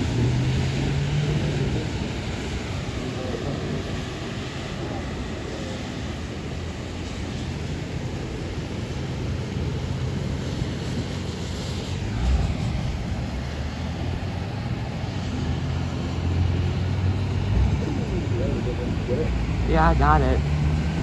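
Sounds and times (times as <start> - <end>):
rain: 0.0 - 21.0
wind: 0.0 - 21.0
thunder rumble: 9.2 - 21.0.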